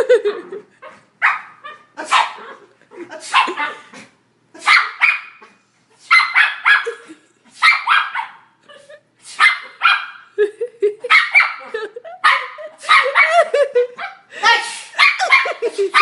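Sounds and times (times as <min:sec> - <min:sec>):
dog barking: 0:01.2 - 0:02.6, 0:04.6 - 0:05.5, 0:06.1 - 0:07.0, 0:07.6 - 0:08.5, 0:09.4 - 0:10.3, 0:11.1 - 0:14.2, 0:15.0 - 0:16.0
person sneezing: 0:14.4 - 0:15.1.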